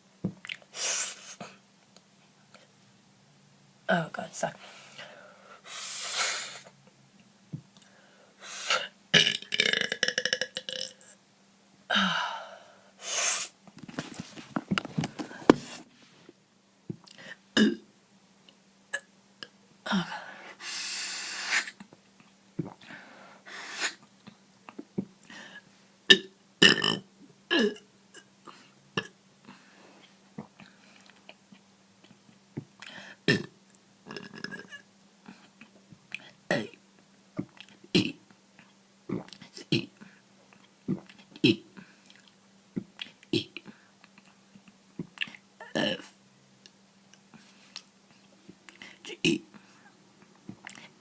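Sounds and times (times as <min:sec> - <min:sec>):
mouth and throat clicks: 0:00.4 - 0:00.7, 0:37.4 - 0:45.5, 0:50.5 - 0:50.9
person burping: 0:09.2 - 0:11.1, 0:17.6 - 0:17.9, 0:26.1 - 0:28.3, 0:29.0 - 0:29.2, 0:33.3 - 0:34.8, 0:37.4 - 0:38.2, 0:39.1 - 0:39.9, 0:40.9 - 0:41.7, 0:43.3 - 0:43.6.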